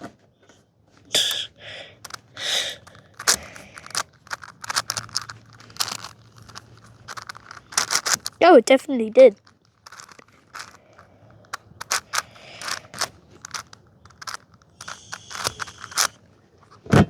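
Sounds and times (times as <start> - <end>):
puzzle cube layers clicking: 2.1 - 8.4, 9.8 - 16.2.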